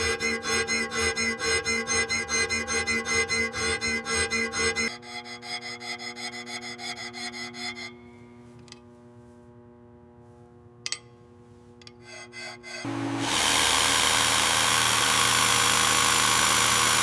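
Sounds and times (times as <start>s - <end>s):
rhythmic filing strokes: 0.0s - 8.7s, 11.6s - 17.0s
low steady hum of held tones: 0.0s - 13.0s.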